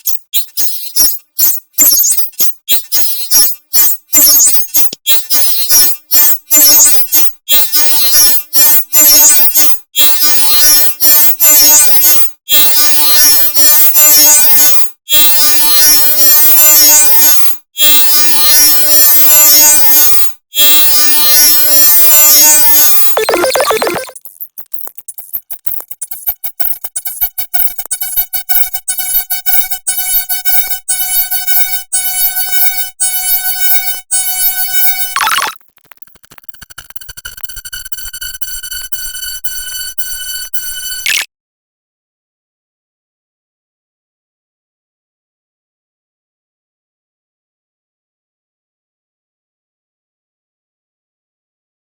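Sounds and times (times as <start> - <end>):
buzzing electronic tone: 23.2 - 24.2, 35.0 - 41.3.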